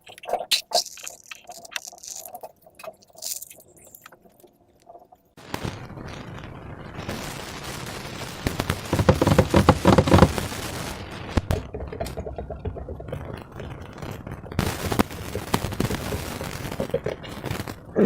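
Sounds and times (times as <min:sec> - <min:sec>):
slime squeezed by hand: 0:00.0 - 0:04.1
crackling air-bubble pops: 0:00.0 - 0:18.0.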